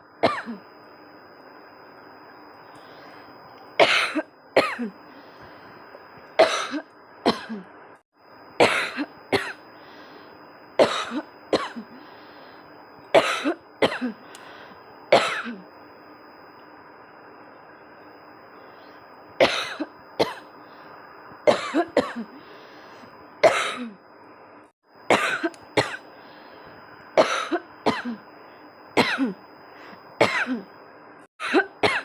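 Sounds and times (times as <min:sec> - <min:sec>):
person coughing: 0:23.4 - 0:24.0, 0:27.2 - 0:28.2, 0:29.0 - 0:29.4, 0:30.2 - 0:30.7, 0:31.4 - 0:32.0.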